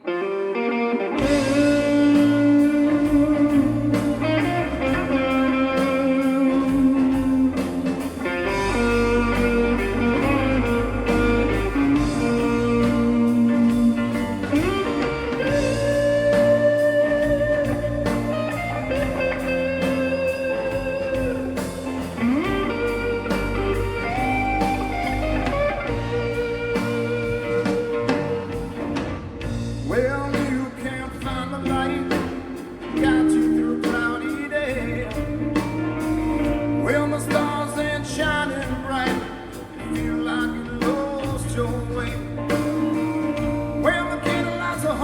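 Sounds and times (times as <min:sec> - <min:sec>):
bass guitar: 0:00.0 - 0:45.0
electric guitar lead: 0:00.0 - 0:45.0
steady drum beat: 0:01.2 - 0:45.0.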